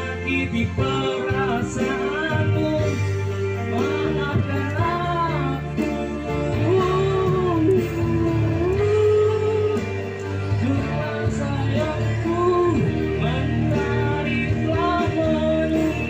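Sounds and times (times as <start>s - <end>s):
instrumental backing music: 0.0s - 16.0s
person singing: 0.0s - 16.0s.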